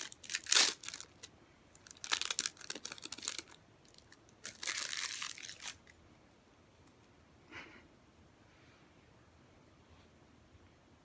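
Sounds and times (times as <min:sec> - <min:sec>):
foil wrapper crinkling and tearing: 0:00.0 - 0:05.9.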